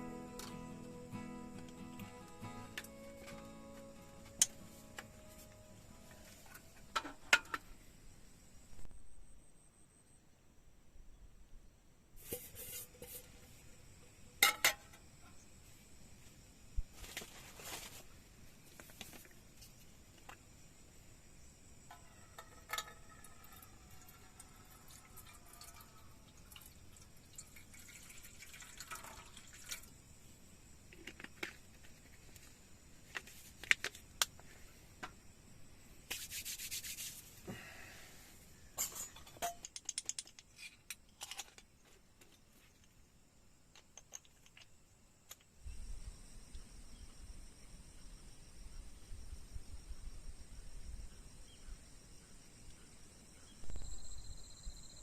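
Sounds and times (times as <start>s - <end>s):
rustling hiss: 0.0s - 8.6s, 12.1s - 14.1s, 29.2s - 39.1s
rubbing and scraping: 12.2s - 13.4s, 36.1s - 37.4s.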